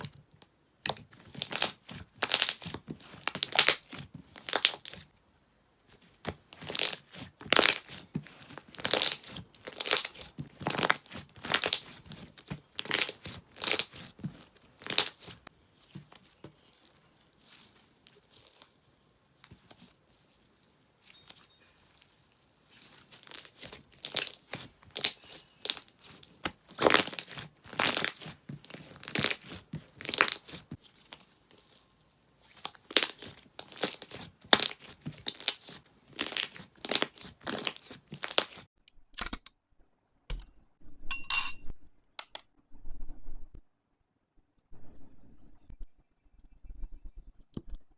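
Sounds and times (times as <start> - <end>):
slime crackling and popping: 0.9 - 5.1, 6.6 - 15.4, 21.9 - 31.3, 32.5 - 38.7
high ringing clink: 41.1 - 41.7.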